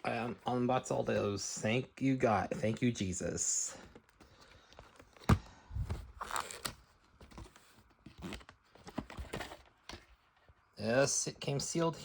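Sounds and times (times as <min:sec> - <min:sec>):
plastic wrap tearing and rustling: 0:06.1 - 0:06.8.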